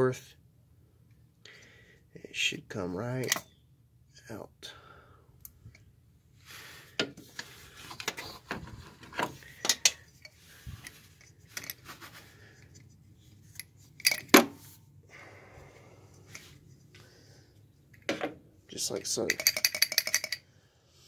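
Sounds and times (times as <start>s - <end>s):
metallic clinks and knocks: 13.5s - 14.4s, 19.0s - 20.4s.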